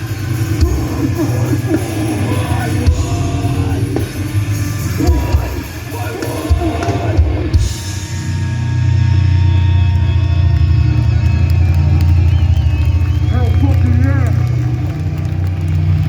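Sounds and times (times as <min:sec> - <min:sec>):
live heavy band playing: 0:00.0 - 0:16.0
person singing: 0:00.6 - 0:04.1, 0:04.9 - 0:07.5.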